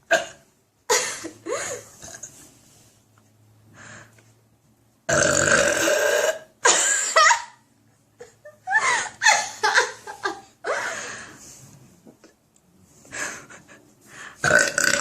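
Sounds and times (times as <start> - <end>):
girl burping: 5.1 - 6.5, 14.4 - 15.0.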